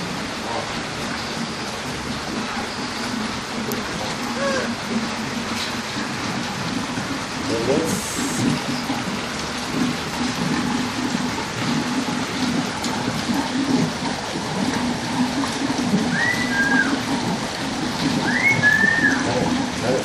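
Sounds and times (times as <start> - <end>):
water falling and splashing: 0.0 - 20.0
short whistled notes: 18.2 - 19.3.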